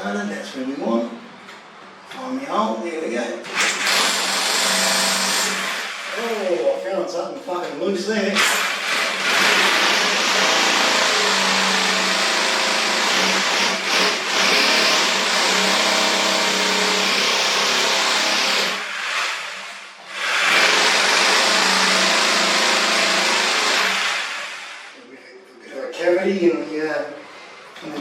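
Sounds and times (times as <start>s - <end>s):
electric drill boring into concrete: 3.5s - 6.3s, 8.4s - 25.0s.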